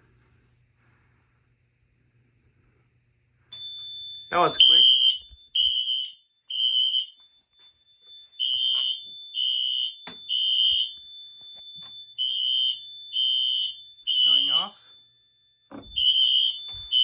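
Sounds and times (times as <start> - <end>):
fire alarm beeping: 3.5 - 17.0.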